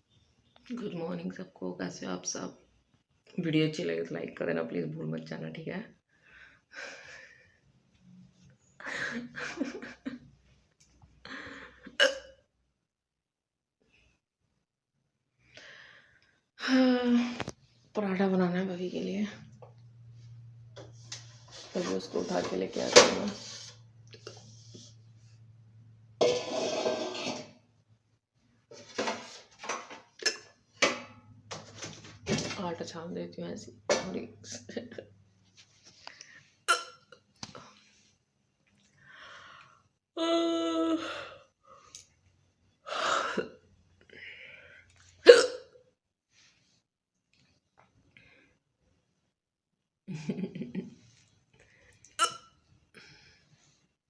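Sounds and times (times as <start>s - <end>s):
woman hiccuping: 12.0s - 12.4s, 36.7s - 37.1s, 45.2s - 45.8s, 52.2s - 52.5s
loud scrape: 21.0s - 25.0s, 26.2s - 27.6s
metal utensils and dishes clattering: 21.4s - 23.8s, 26.2s - 27.6s, 28.7s - 32.6s.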